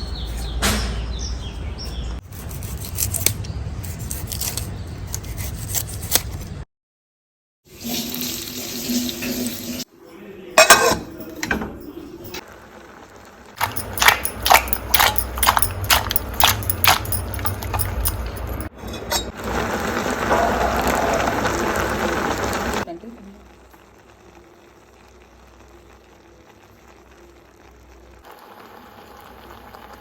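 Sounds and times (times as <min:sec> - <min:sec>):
yam sizzling in oil: 0:07.7 - 0:09.9, 0:19.3 - 0:30.0
metal utensils and dishes clinking: 0:10.6 - 0:12.4, 0:13.6 - 0:19.4.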